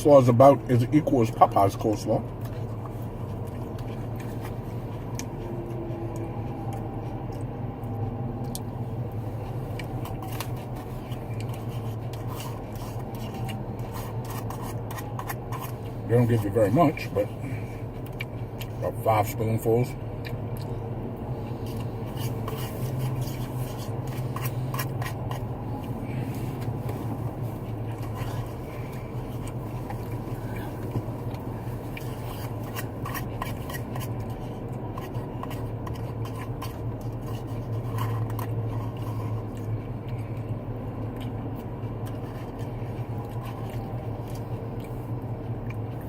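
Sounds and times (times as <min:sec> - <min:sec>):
steady low hum: 0:00.0 - 0:46.0
spoon scraping a cup: 0:10.0 - 0:17.0.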